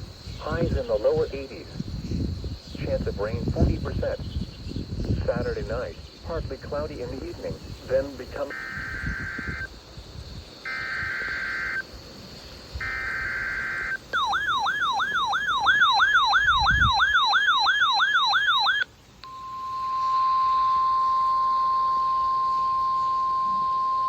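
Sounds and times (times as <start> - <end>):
buzzy digital data bursts: 0.2 - 24.0
steady warning alarm tone: 6.3 - 9.7, 10.6 - 11.9, 12.8 - 24.0
electronic siren warble: 8.5 - 9.7, 10.7 - 11.8, 12.8 - 24.0.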